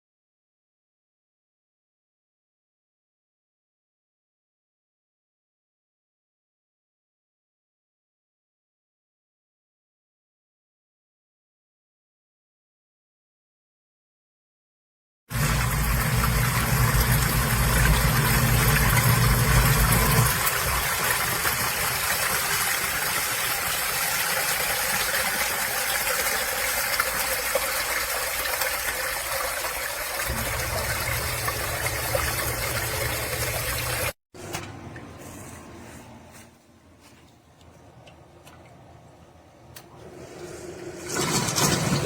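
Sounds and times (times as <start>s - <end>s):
pump motor humming: 15.3s - 34.1s
water gushing: 15.3s - 34.2s, 40.0s - 42.0s.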